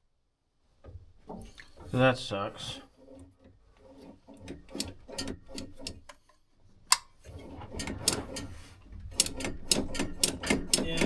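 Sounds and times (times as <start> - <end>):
light clicks and knocks: 3.0 - 11.0.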